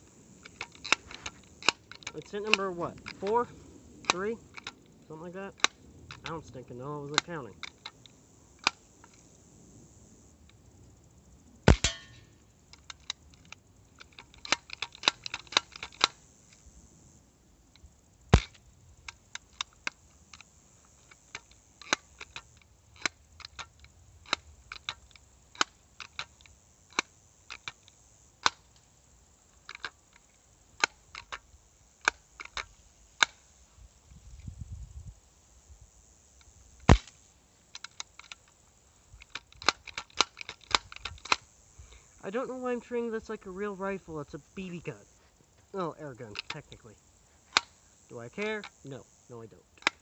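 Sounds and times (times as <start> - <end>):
air pellet gun shots: 11.7 - 12.2
faint sharp clicks: 46.1 - 50.0.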